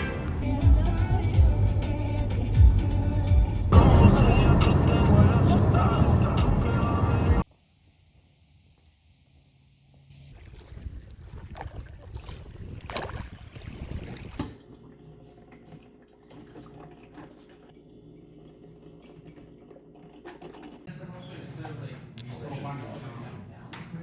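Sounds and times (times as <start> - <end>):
water running: 10.4 - 20.9.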